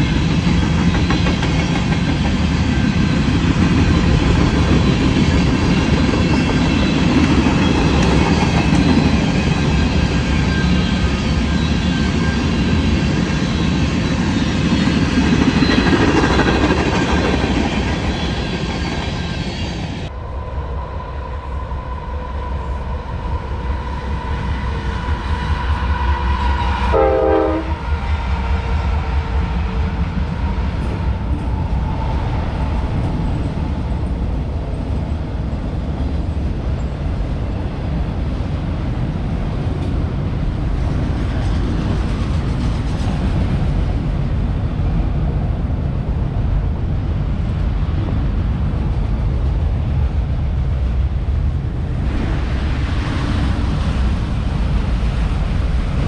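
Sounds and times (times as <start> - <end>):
freight train rumbling on rails: 0.0 - 56.0
locomotive horn: 26.9 - 27.8.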